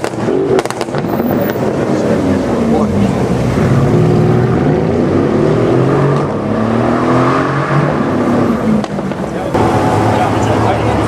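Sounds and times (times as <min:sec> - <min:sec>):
car engine with loud exhaust: 0:00.0 - 0:11.0.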